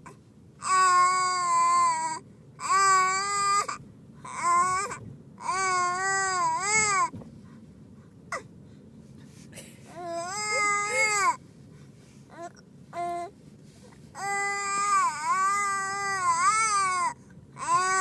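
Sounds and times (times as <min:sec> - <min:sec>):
infant crying: 0:09.9 - 0:11.4, 0:14.2 - 0:18.0.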